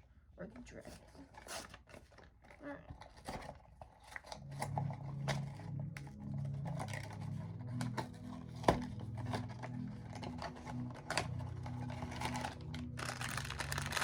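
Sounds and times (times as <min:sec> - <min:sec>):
cardboard box and wrapping rustling: 0:00.6 - 0:14.0
soft background music with bass: 0:04.1 - 0:14.0.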